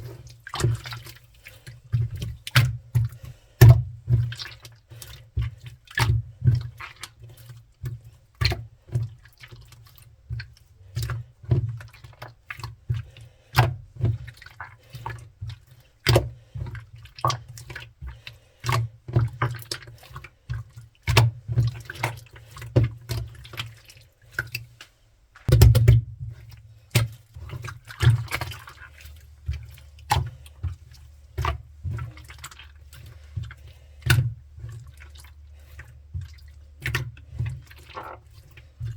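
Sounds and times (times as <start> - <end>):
dull low thumps: 25.5 - 26.4.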